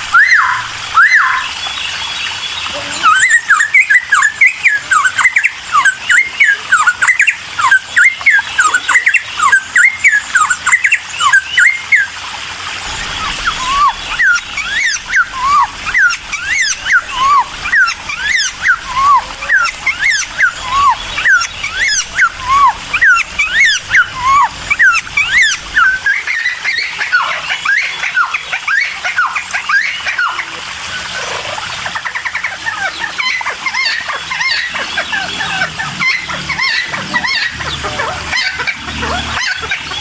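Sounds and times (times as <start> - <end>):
bird singing whistled notes: 0.1 - 12.1, 12.8 - 26.9.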